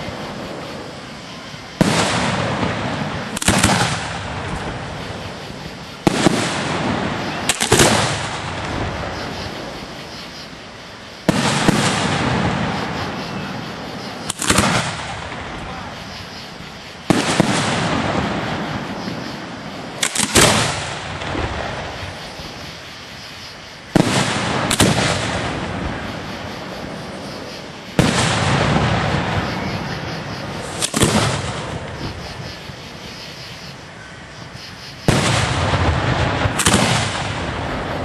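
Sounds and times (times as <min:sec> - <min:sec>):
rumbling echo and crackle: 0:00.0 - 0:10.6, 0:11.3 - 0:23.0, 0:35.1 - 0:38.0.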